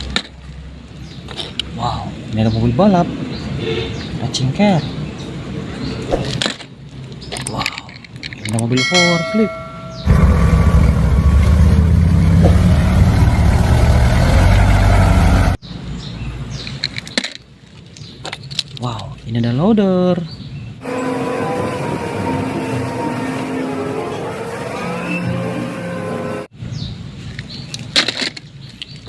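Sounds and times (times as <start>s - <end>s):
vehicle engine running: 9.5s - 15.6s.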